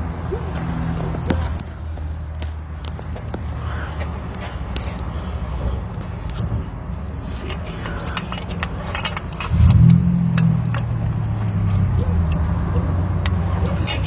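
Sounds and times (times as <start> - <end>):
car engine starting and running: 8.0 - 14.0.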